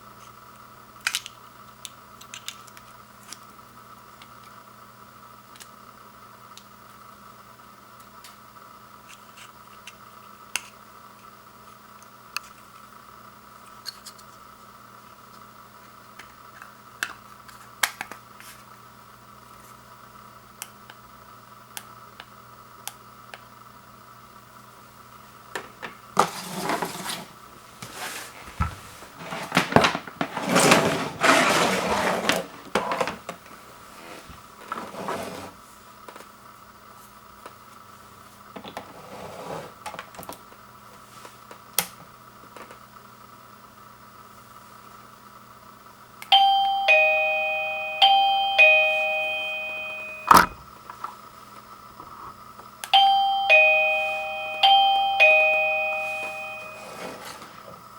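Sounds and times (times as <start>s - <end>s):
faint steady hum: 0.0s - 57.9s
packaging rustling and scraping: 26.2s - 35.6s, 56.1s - 57.8s.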